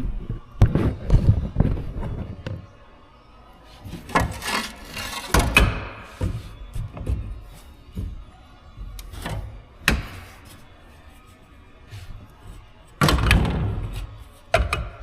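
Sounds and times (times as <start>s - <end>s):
loud scraping rush: 4.1s - 5.4s.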